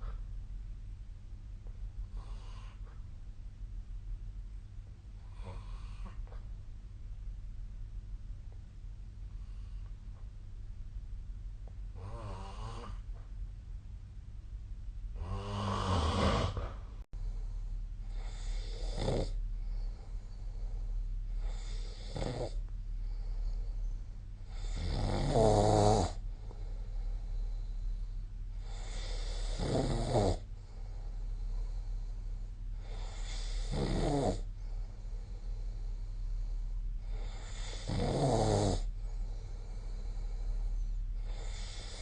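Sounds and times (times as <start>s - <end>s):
steady low hum: 0.0s - 42.0s
person snoring: 12.0s - 13.0s, 15.2s - 16.7s, 18.1s - 20.1s, 21.3s - 22.6s, 24.5s - 26.2s, 28.6s - 34.5s, 35.3s - 42.0s.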